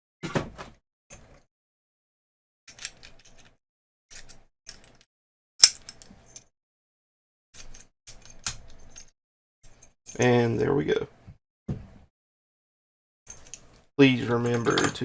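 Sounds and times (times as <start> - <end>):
padlock metal clicks and rattles: 2.7 - 6.5.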